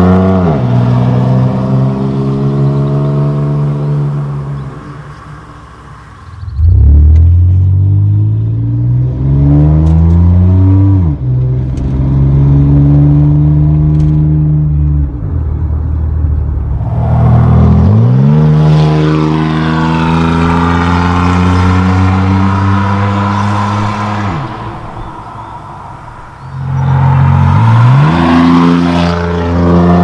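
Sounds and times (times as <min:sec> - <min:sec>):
car exhaust accelerating hard: 0:16.4 - 0:30.0.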